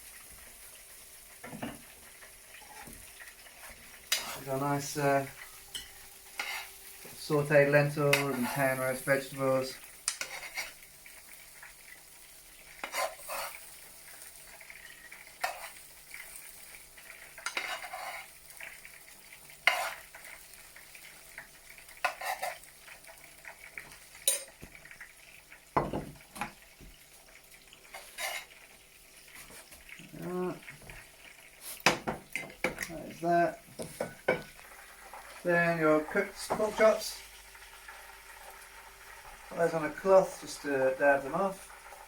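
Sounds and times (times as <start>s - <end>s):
faint sizzle: 0.0s - 42.0s
spoon scraping in a pan: 1.4s - 12.0s, 12.6s - 24.7s, 27.8s - 33.0s, 33.7s - 35.4s.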